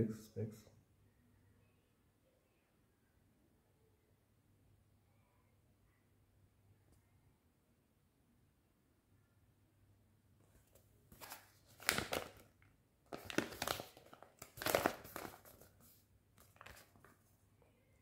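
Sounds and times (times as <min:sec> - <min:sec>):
paper rustling and crinkling: 0:10.6 - 0:12.5, 0:13.1 - 0:17.4.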